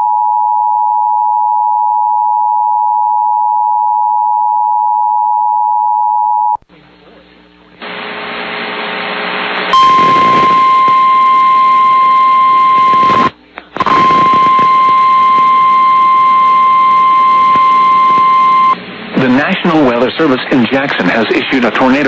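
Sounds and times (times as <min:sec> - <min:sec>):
burst of static noise: 0:07.5 - 0:22.0.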